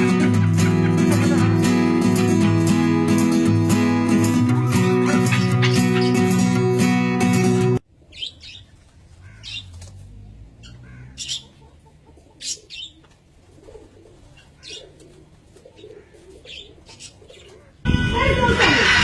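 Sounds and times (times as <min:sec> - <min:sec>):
guitar music: 0:00.0 - 0:07.8.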